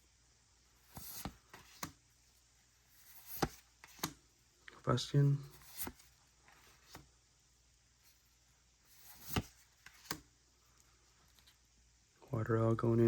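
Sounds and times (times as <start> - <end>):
soft card rustle: 0.7 - 7.1, 8.0 - 11.7
cards tapping and clicking: 0.9 - 2.0, 3.0 - 4.2, 9.1 - 10.2.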